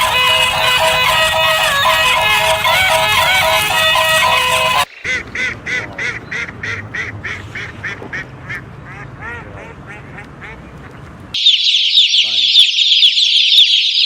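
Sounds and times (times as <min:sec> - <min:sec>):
duck quacking: 0:00.0 - 0:10.8.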